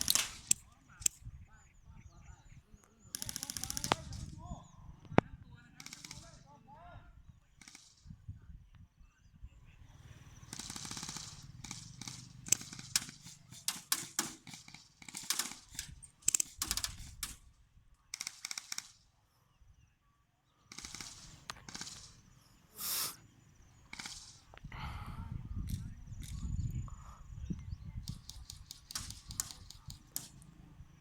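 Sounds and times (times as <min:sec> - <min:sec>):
airsoft guns firing bursts: 0:00.0 - 0:01.2, 0:03.1 - 0:04.4, 0:05.7 - 0:06.6, 0:07.5 - 0:08.1, 0:10.4 - 0:17.5, 0:18.1 - 0:19.1, 0:20.7 - 0:23.0, 0:23.8 - 0:24.5, 0:28.0 - 0:31.0.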